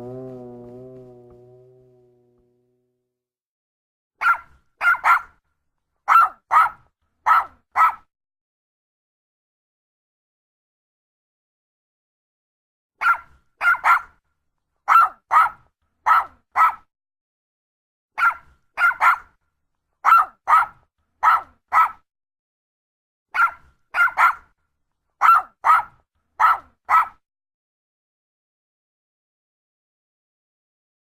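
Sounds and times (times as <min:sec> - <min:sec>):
small dog barking: 0:04.2 - 0:05.4, 0:06.1 - 0:08.1, 0:13.0 - 0:14.2, 0:14.9 - 0:16.9, 0:18.2 - 0:19.3, 0:20.0 - 0:22.0, 0:23.3 - 0:24.5, 0:25.2 - 0:27.2.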